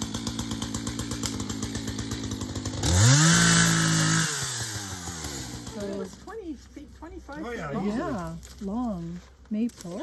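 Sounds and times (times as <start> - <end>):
chainsaw idling and revving: 0.0 - 9.0.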